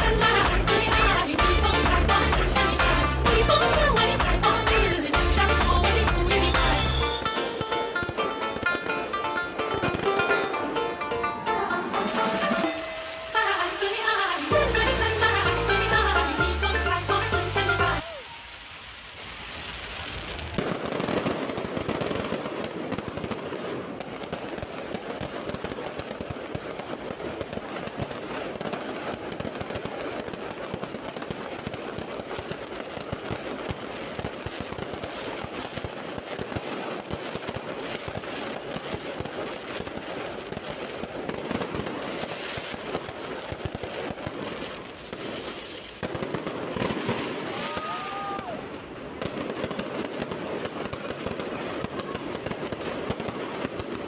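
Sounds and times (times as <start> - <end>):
fireworks crackling: 0.0 - 54.0
loud firework pops: 19.5 - 48.6, 49.2 - 54.0.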